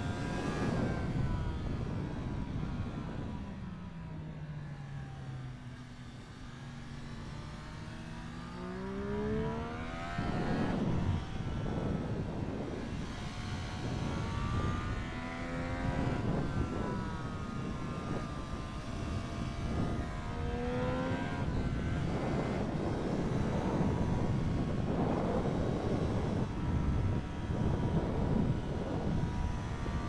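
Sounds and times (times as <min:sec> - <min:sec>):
wind rush on microphone: 0:00.0 - 0:04.3, 0:06.6 - 0:30.0
motorcycle engine accelerating hard: 0:06.2 - 0:30.0.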